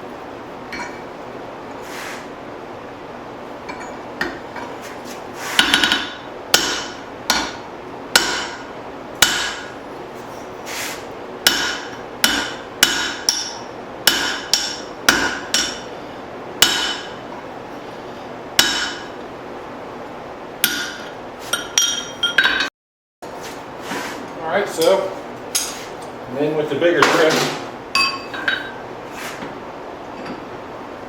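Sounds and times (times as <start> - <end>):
hammer striking steel on anvil: 5.6 - 7.6, 8.2 - 9.7, 11.4 - 15.9, 16.6 - 17.2, 18.6 - 19.1, 20.6 - 22.7, 25.6 - 25.9, 27.0 - 28.8.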